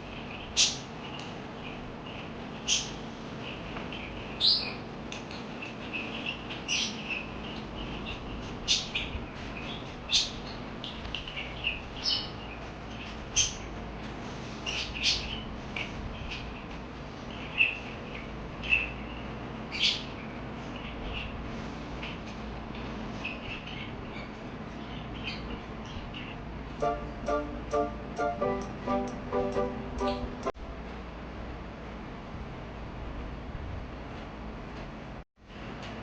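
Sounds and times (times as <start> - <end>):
parakeets chirping: 0.0 - 13.6, 14.6 - 15.5, 17.3 - 21.3, 23.2 - 28.5
low background noise: 0.0 - 36.0.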